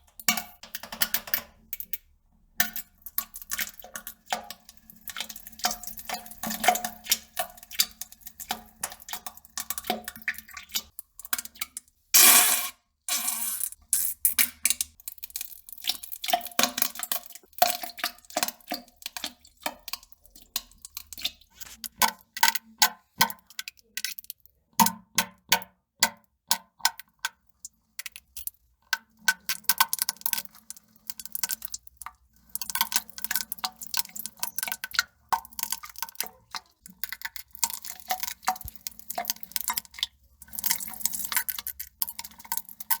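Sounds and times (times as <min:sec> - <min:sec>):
wet crackling and plopping: 0:26.4 - 0:43.0.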